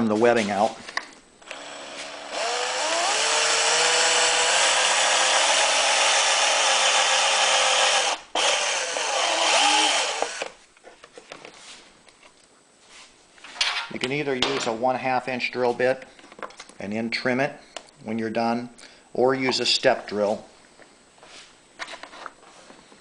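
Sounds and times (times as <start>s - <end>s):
power drill boring: 1.4s - 10.5s.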